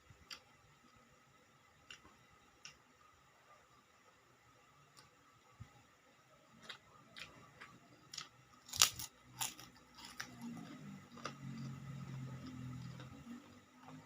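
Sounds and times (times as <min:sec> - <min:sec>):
low hum: 0:05.2 - 0:14.0
chewing crunchy crackers: 0:06.5 - 0:14.0.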